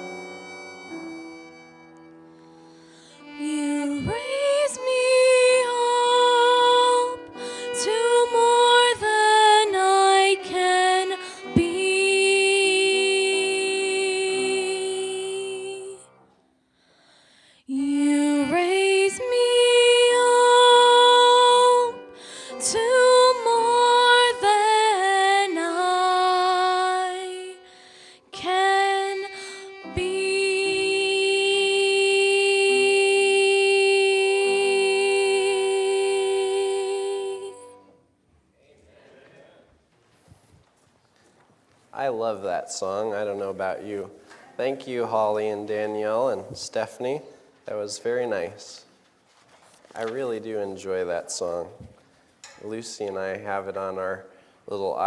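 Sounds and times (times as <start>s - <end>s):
women singing worship song: 3.2s - 16.1s, 17.6s - 27.7s, 28.3s - 38.0s.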